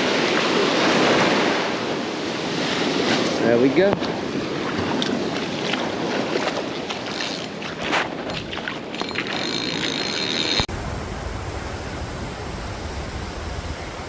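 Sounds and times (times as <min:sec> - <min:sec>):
ocean surf washing on beach: 0:00.0 - 0:10.0, 0:10.6 - 0:14.0
wind buffeting microphone: 0:10.6 - 0:14.0.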